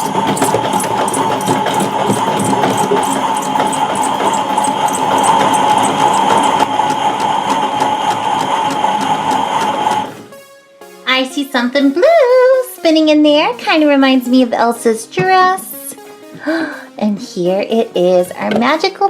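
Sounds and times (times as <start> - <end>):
small electric motor whirring: 0.0 - 10.1
fast ticking of spinning drum: 0.0 - 10.2.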